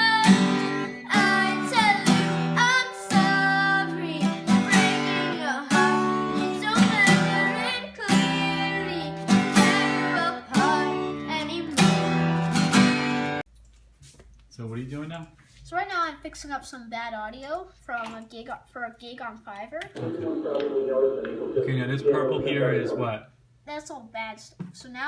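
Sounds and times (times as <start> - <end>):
person singing: 0.0 - 11.9
acoustic guitar strumming: 0.0 - 13.4.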